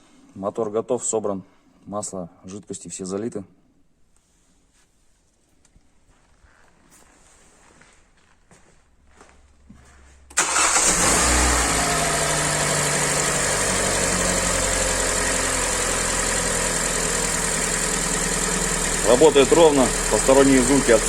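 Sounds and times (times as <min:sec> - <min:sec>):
car engine starting and idling: 0:10.3 - 0:21.0.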